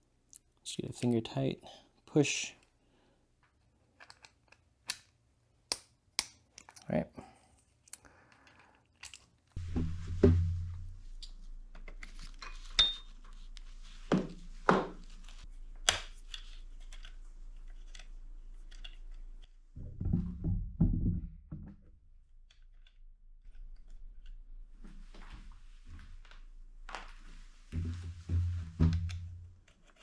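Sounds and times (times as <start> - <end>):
tools and bike parts clinking: 7.6 - 9.4, 12.4 - 13.0
dull thuds: 9.6 - 11.0, 19.8 - 22.0, 27.8 - 29.6.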